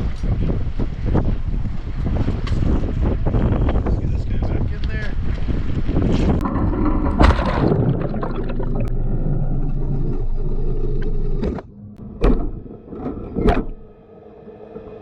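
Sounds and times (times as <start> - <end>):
wind buffeting microphone: 0.0 - 11.6.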